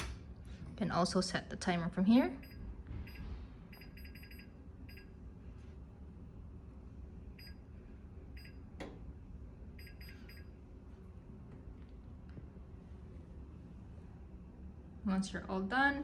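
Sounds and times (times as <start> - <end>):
oven timer beeps: 2.4 - 5.2, 7.4 - 7.7, 8.3 - 8.8, 9.8 - 10.6.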